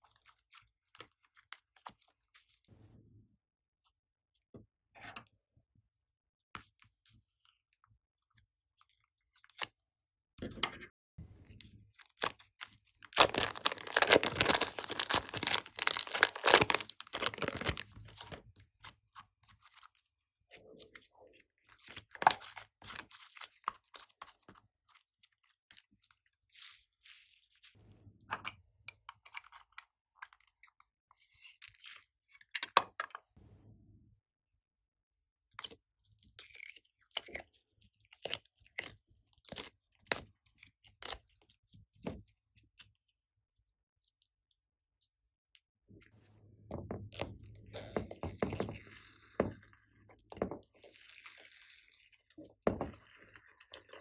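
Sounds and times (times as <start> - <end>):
slime crackling and popping: 12.2 - 18.4
slime squishing: 12.2 - 18.4, 47.0 - 51.3.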